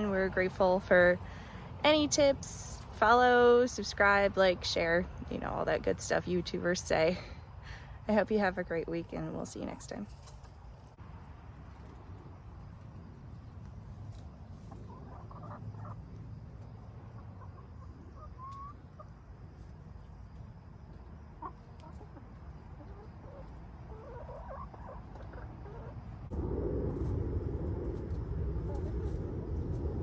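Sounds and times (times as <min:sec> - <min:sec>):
chickens clucking softly: 0:14.1 - 0:26.2
low background rumble: 0:24.7 - 0:30.0.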